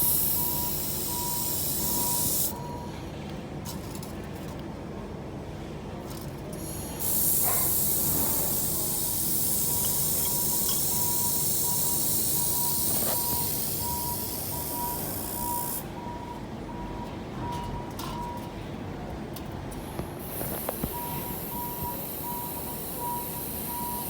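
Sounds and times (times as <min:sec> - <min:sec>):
welding torch gas hiss: 0:00.0 - 0:02.6, 0:06.6 - 0:15.8, 0:19.9 - 0:24.0
faint repeating beep: 0:00.3 - 0:03.0, 0:09.8 - 0:18.5, 0:20.9 - 0:24.0.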